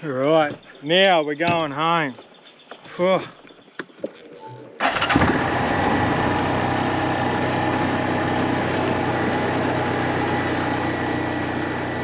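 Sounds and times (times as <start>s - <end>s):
vehicle engine idling: 4.8s - 12.0s.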